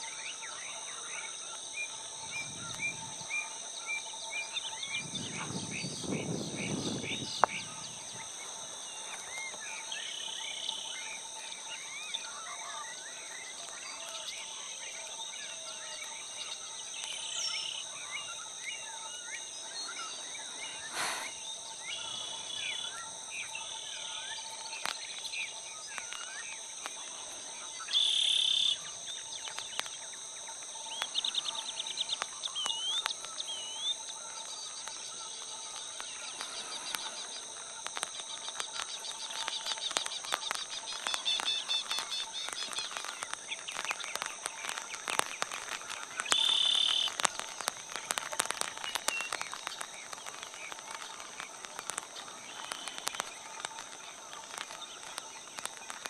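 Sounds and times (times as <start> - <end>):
high insect drone: 0.0 - 56.0
small birds chirping and whistling: 27.7 - 56.0.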